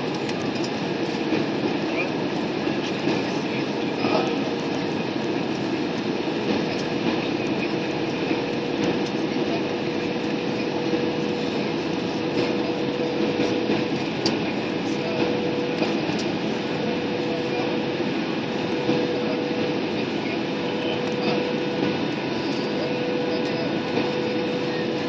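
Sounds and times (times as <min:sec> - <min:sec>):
airliner engine and air roar: 0:00.0 - 0:25.0.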